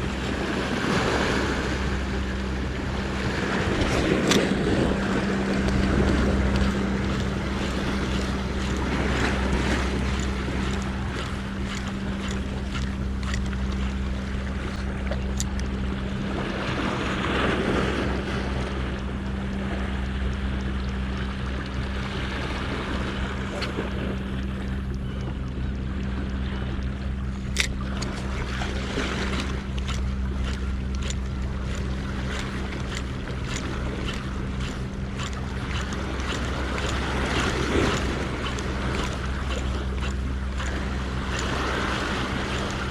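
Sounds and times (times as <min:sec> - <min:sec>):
sea surf washing against rocks: 0:00.0 - 0:18.8, 0:27.6 - 0:42.9
wind on microphone: 0:00.0 - 0:19.0
steady low hum: 0:00.0 - 0:42.9.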